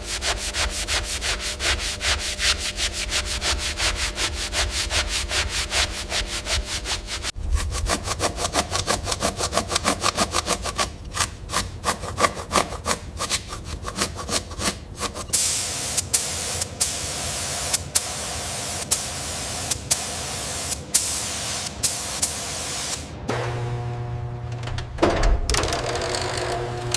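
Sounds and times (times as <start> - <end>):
hand sanding strokes: 0.0 - 23.0
steady hiss: 15.3 - 23.2.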